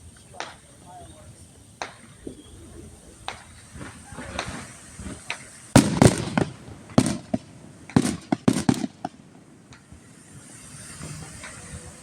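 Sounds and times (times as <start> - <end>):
fireworks bangs: 0.0 - 12.0.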